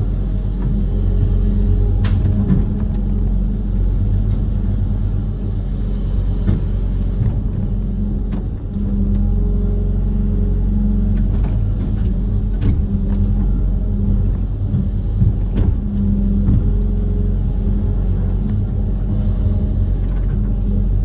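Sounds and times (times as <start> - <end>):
diesel engine running: 0.0 - 21.0
machine knocks: 11.2 - 16.8.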